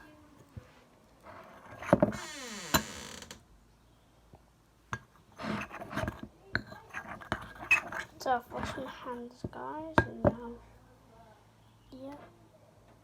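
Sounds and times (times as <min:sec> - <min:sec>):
creaking squeak: 0:01.4 - 0:03.4, 0:06.9 - 0:08.1.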